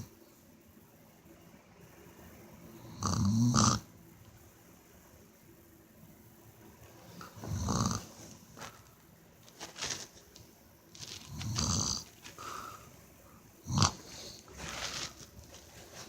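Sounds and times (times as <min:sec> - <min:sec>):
person snoring: 0:02.8 - 0:03.9, 0:07.2 - 0:08.3, 0:11.3 - 0:12.9, 0:13.6 - 0:15.2.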